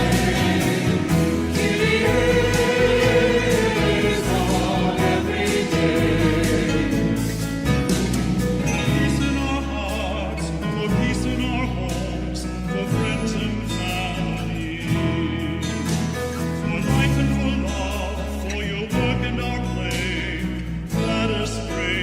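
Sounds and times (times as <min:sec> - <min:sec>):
sustained accompanying chords: 0:00.0 - 0:07.6
choir singing a hymn: 0:00.0 - 0:09.3.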